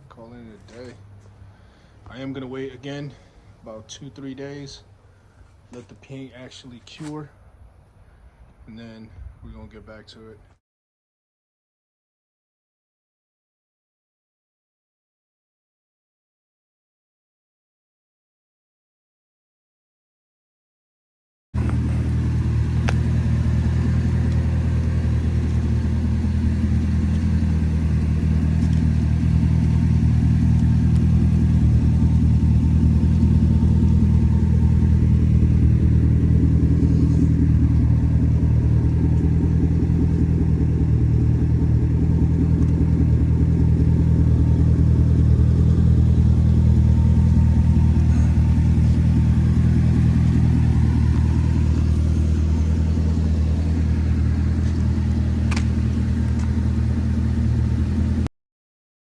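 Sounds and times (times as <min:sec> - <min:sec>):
car engine running: 0:21.6 - 0:58.3.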